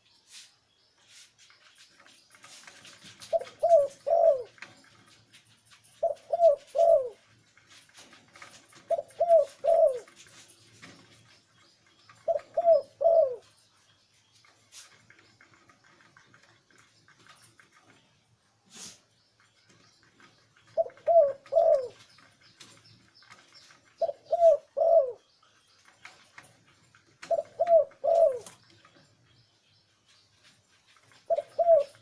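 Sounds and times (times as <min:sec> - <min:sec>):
dove cooing: 0:03.2 - 0:04.7, 0:05.9 - 0:07.3, 0:08.4 - 0:10.3, 0:12.1 - 0:13.5, 0:20.6 - 0:22.3, 0:23.9 - 0:25.2, 0:27.2 - 0:28.7, 0:31.0 - 0:32.0.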